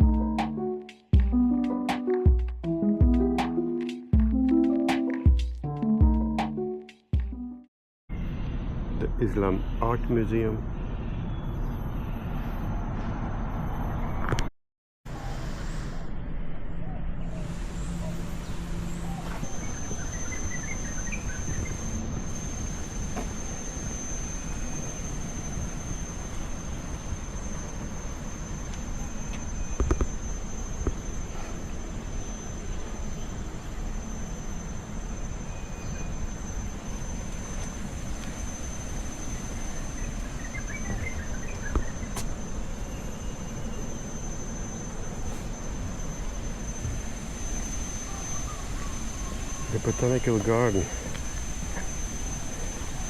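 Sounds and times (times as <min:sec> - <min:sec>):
thin high tone: 0:00.0 - 0:07.7, 0:17.8 - 0:53.0
low traffic rumble: 0:15.1 - 0:53.0
bird chirps: 0:16.8 - 0:22.0, 0:39.2 - 0:44.2.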